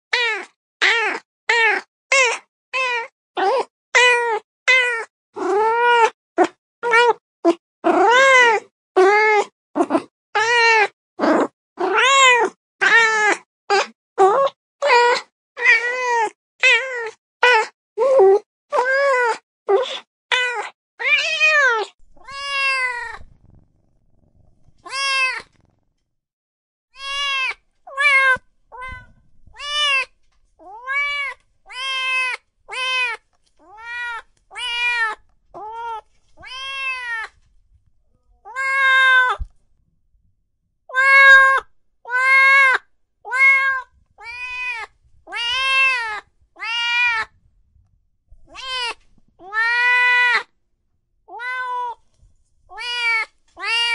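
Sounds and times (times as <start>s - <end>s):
cats meowing: 20.3s - 23.3s, 24.8s - 25.8s, 27.0s - 37.4s, 38.4s - 39.5s, 40.9s - 47.4s, 48.5s - 50.5s, 51.3s - 52.0s, 52.7s - 53.9s.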